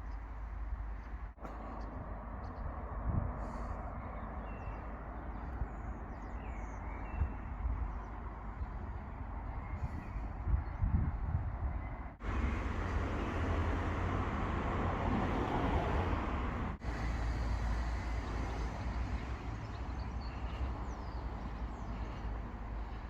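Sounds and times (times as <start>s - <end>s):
low traffic rumble: 0.0s - 23.0s
vehicle passing: 12.2s - 23.0s.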